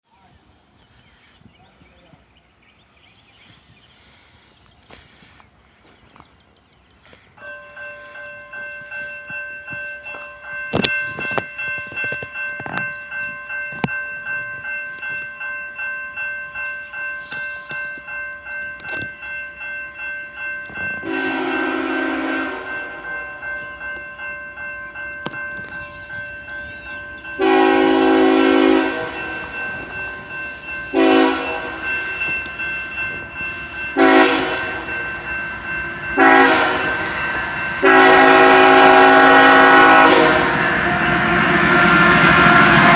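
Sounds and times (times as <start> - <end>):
railroad crossing bell ringing: 7.1 - 42.9
locomotive air horn blasts: 21.0 - 23.0, 27.4 - 29.4, 30.9 - 32.0, 34.0 - 35.0, 36.2 - 37.2, 37.8 - 40.6.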